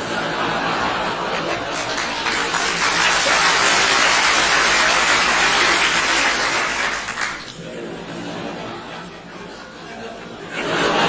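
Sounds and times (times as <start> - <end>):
large audience laughing: 0.0 - 11.0.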